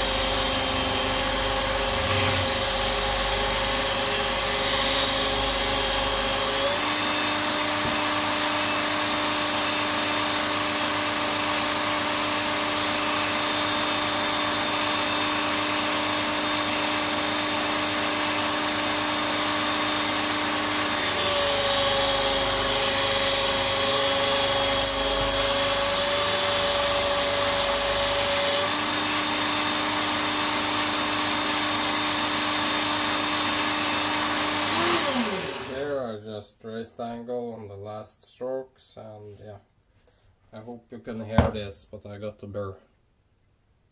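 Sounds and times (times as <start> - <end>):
motor whine: 0.0 - 6.8.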